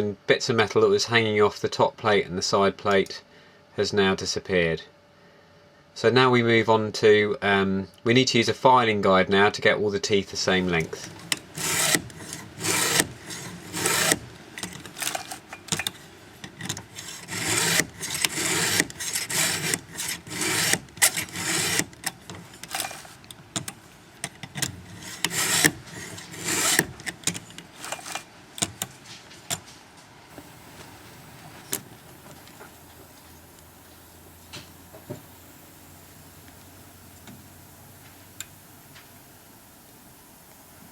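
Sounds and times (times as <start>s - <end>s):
file rasping on chainsaw chain: 10.8s - 28.8s.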